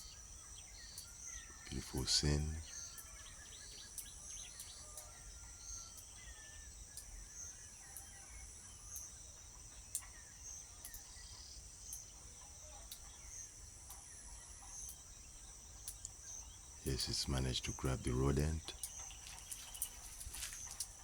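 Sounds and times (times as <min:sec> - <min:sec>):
crickets droning: 0:00.0 - 0:21.0
sharp ticks: 0:15.8 - 0:16.2.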